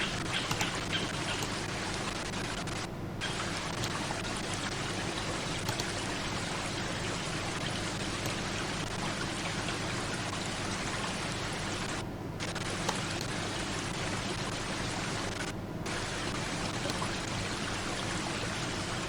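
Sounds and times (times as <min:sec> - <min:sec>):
scattered drops and ticks: 0:00.0 - 0:01.6.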